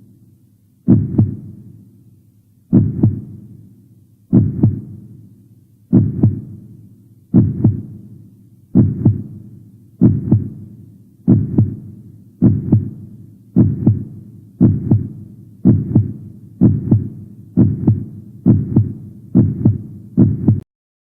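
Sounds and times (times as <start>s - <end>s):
heartbeat thumps: 0.9s - 1.5s, 2.7s - 3.4s, 4.3s - 5.0s, 5.9s - 6.6s, 7.3s - 8.0s, 8.8s - 9.4s, 10.0s - 10.7s, 11.3s - 20.6s.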